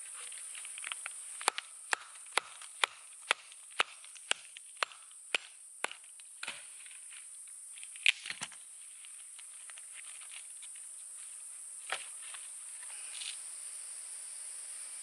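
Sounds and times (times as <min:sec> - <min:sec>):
high-pitched insect buzzing: 0:12.7 - 0:15.0.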